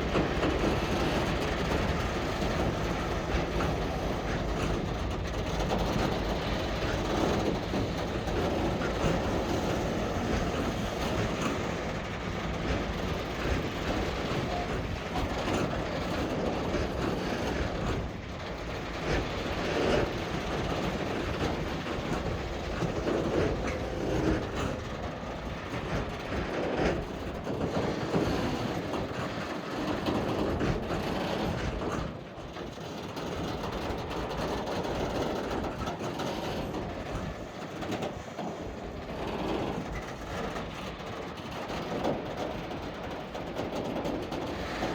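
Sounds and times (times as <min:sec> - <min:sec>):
diesel locomotive engine running: 0:00.0 - 0:32.6.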